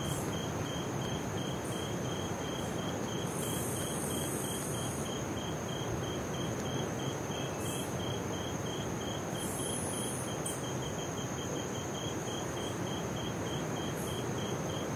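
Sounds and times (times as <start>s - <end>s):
insects chirping: 0.0s - 14.9s
insects high whine: 0.0s - 14.9s.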